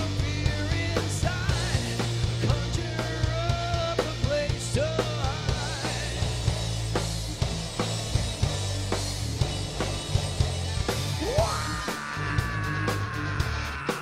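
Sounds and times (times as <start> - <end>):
steady drum hits: 0.0 - 12.1
bass guitar: 0.0 - 14.0
electric guitars bending notes: 5.4 - 14.0.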